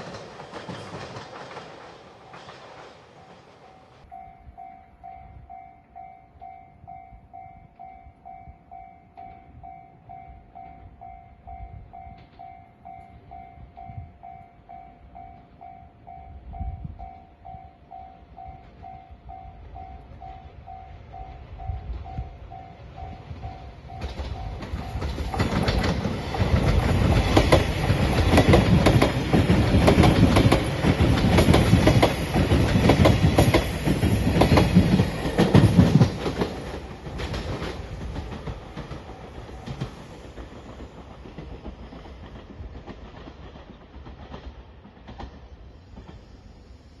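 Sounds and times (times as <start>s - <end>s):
train wheels clattering over rails: 0.0s - 4.1s, 23.0s - 46.4s.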